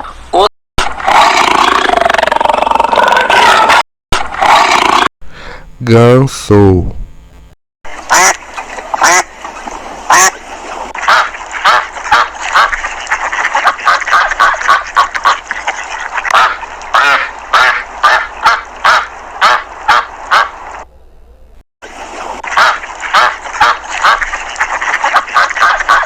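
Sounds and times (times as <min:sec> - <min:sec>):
geese honking: 0:08.1 - 0:20.6, 0:22.4 - 0:26.0.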